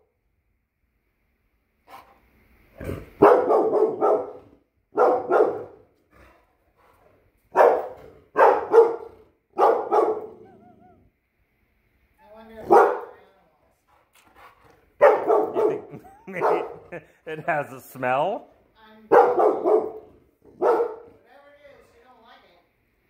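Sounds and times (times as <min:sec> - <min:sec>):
dog barking: 0:02.8 - 0:05.9, 0:07.5 - 0:11.0, 0:12.6 - 0:13.2, 0:15.0 - 0:17.0, 0:19.1 - 0:21.2.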